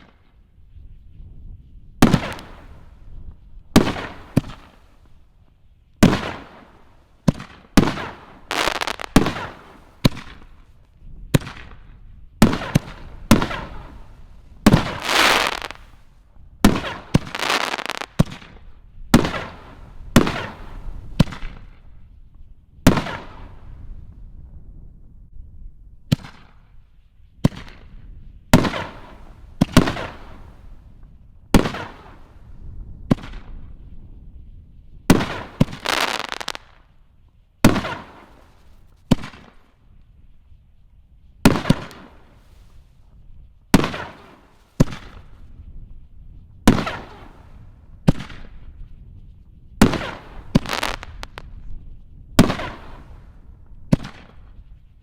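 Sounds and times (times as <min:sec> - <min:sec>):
firework shells launching and bursting: 0:06.1 - 0:10.5, 0:12.4 - 0:16.0, 0:16.7 - 0:18.6, 0:35.1 - 0:36.8, 0:49.8 - 0:51.4.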